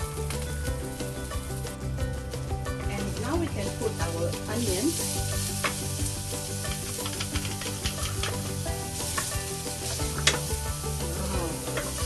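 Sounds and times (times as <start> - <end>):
onions sizzling in a pan: 0.0 - 12.0
utensil scraping a pan: 3.2 - 12.0.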